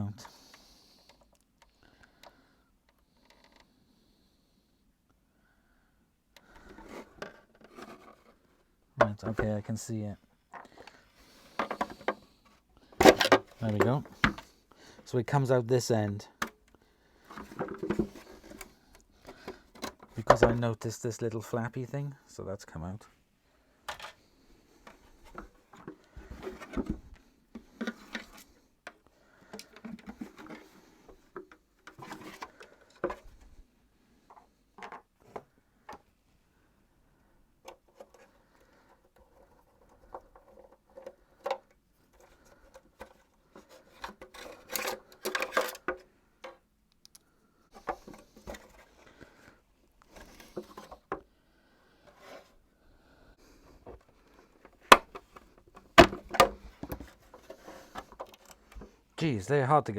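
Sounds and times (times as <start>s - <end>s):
plastic parts clicking and knocking: 10.5s - 14.5s, 16.3s - 20.6s, 23.9s - 24.2s, 24.8s - 33.4s, 34.3s - 36.1s, 37.6s - 49.0s, 53.8s - 59.0s.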